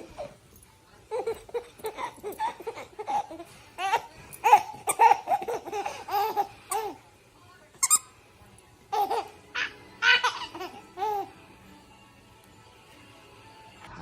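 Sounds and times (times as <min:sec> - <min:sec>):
baby giggling: 0:01.1 - 0:07.0, 0:08.9 - 0:11.3.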